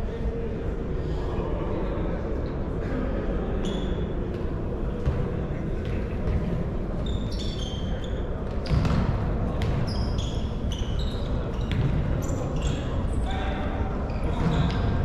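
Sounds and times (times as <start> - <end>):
sneakers squeaking on court floor: 5.8 - 13.3, 14.1 - 15.0.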